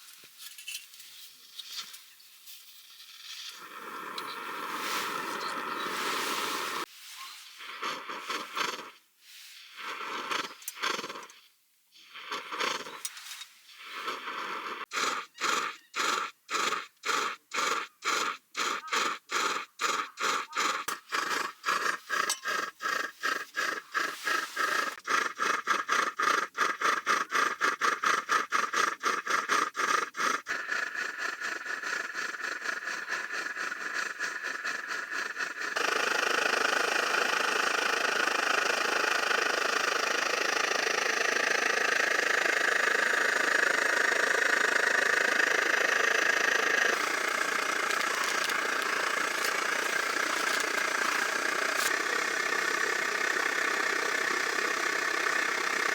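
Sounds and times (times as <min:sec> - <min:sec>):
motorcycle engine cranking and starting: 0:43.0 - 0:55.6.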